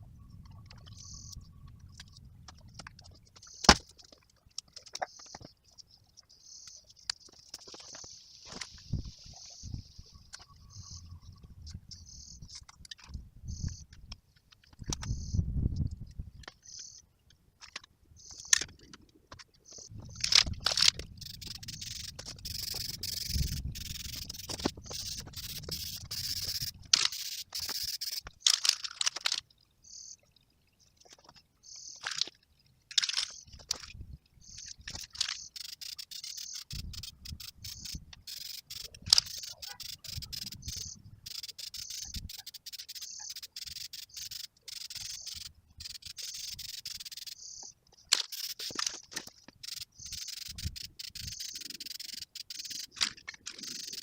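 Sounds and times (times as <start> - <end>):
insect chirring: 0.2 - 2.2, 19.7 - 28.7, 34.4 - 54.0.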